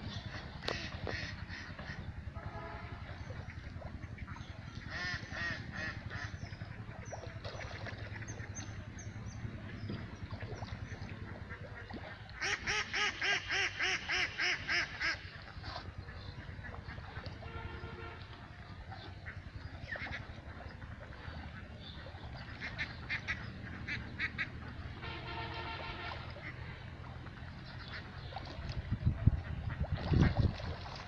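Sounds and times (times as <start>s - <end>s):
steady low rumble: 0.0s - 12.4s
bird calls: 0.0s - 30.9s.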